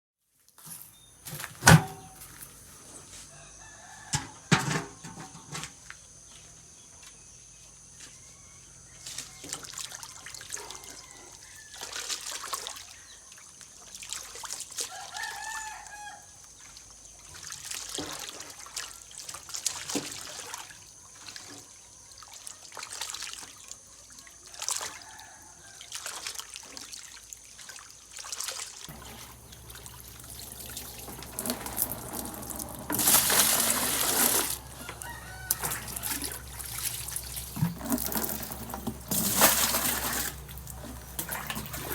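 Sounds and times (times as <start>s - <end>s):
water splashing: 27.6s - 41.9s.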